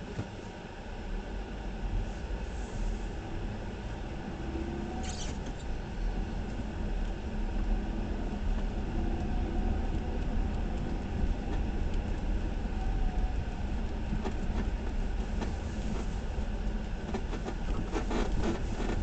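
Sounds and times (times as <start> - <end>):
car rumbling on the move: 0.0 - 19.0
suspension bushings squeaking: 4.9 - 5.8.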